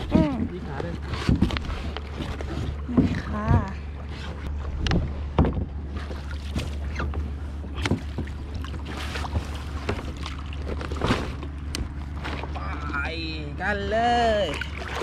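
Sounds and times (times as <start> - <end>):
paddle splashing in water: 4.1 - 12.9, 14.5 - 15.0.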